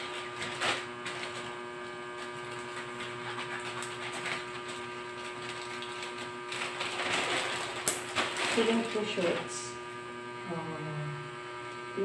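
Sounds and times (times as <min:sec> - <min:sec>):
plastic packaging rustling: 0:00.0 - 0:01.5, 0:02.5 - 0:09.4
steady electrical hum: 0:00.0 - 0:12.0.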